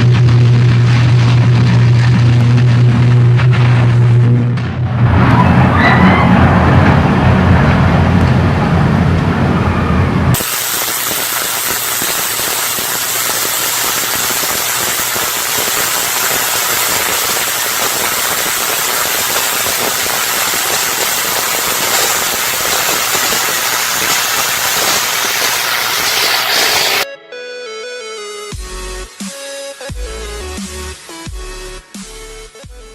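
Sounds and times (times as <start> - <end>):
electrical arcing crackling hiss: 10.4 - 27.1.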